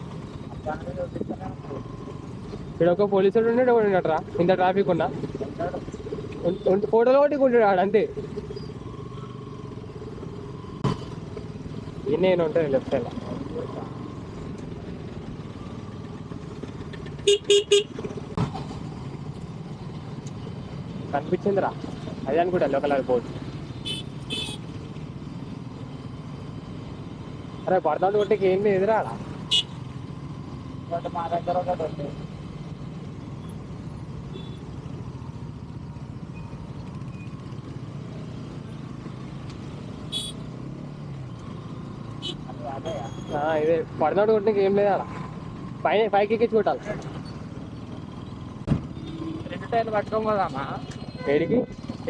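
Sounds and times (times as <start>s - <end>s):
road noise: 0.0s - 52.0s
horn toots: 17.2s - 17.9s, 23.8s - 24.6s, 40.1s - 40.4s.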